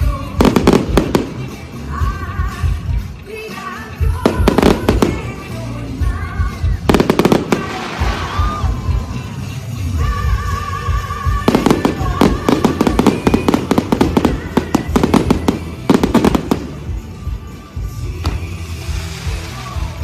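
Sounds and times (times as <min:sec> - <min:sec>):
fireworks bangs and crackles: 0:00.0 - 0:03.0, 0:04.0 - 0:20.0
loud show music: 0:00.0 - 0:20.0.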